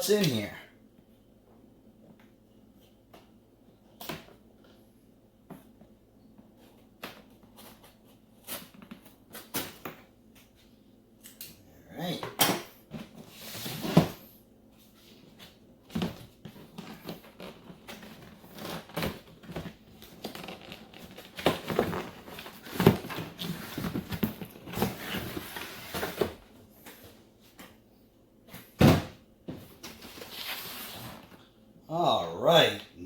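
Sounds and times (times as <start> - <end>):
cardboard packaging rustling: 16.0 - 26.4
loud knocks on cardboard box: 28.8 - 29.6.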